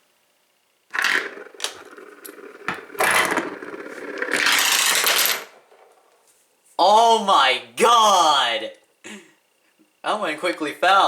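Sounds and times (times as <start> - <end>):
padlocks rattling and scraping: 1.0 - 5.9.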